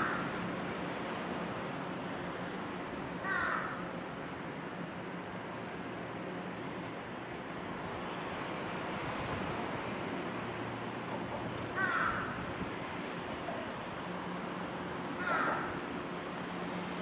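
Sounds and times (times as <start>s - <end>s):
crow cawing: 0.0s - 0.3s, 3.2s - 3.8s, 11.8s - 12.4s, 15.2s - 15.8s.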